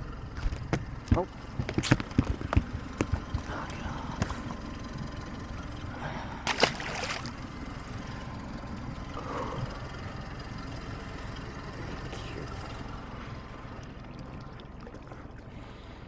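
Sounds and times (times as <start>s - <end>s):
steady low rumble: 0.0s - 16.0s
water sloshing against boat hull: 0.3s - 8.2s, 12.0s - 16.0s
water splash: 6.5s - 7.4s.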